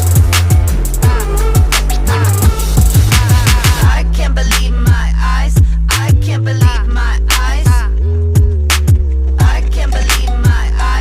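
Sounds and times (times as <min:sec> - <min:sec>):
vocal line: 0:00.0 - 0:08.2, 0:09.4 - 0:11.0
deep held bass: 0:00.0 - 0:11.0
booming kick drums: 0:02.4 - 0:04.0.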